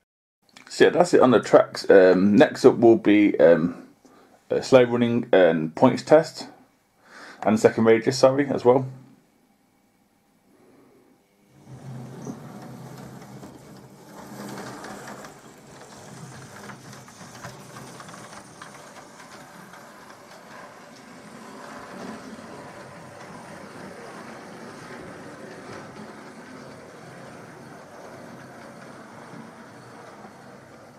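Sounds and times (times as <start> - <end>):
model train motor whirring: 11.6 - 30.9
wheels clicking on rails: 11.6 - 30.9.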